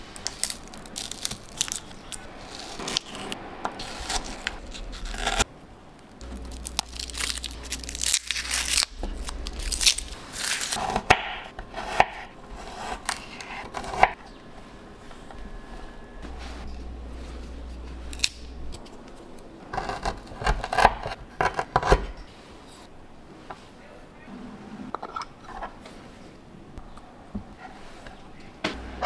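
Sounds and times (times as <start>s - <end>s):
crinkling and tearing of peel: 0.0s - 14.2s, 16.1s - 21.9s.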